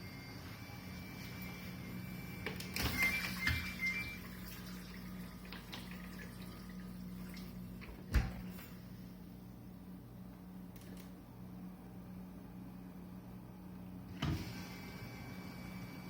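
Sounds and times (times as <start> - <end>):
shrill high whine: 0.0 - 5.3
dishwasher motor hum: 0.0 - 16.0.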